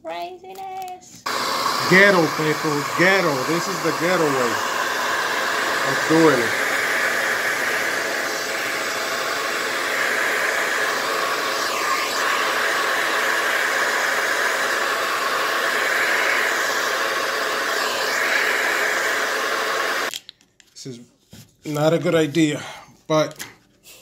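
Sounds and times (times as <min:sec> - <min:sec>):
hair dryer blowing: 0:01.2 - 0:20.1.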